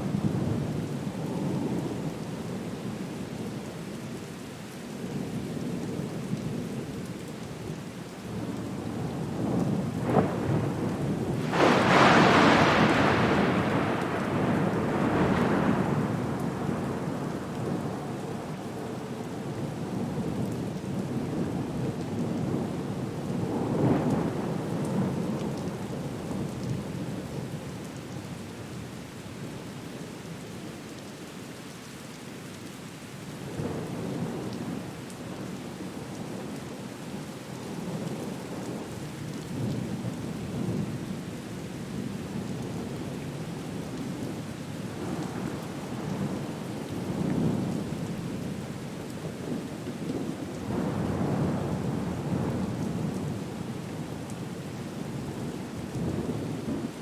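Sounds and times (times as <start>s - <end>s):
steady rain: 0.0s - 57.0s
thunder rumbling: 9.4s - 18.4s.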